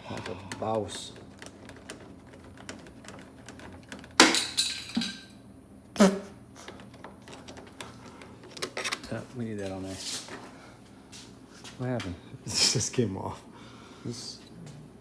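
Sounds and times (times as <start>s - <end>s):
parts clicking and rattling: 0.0s - 5.4s, 6.7s - 9.8s.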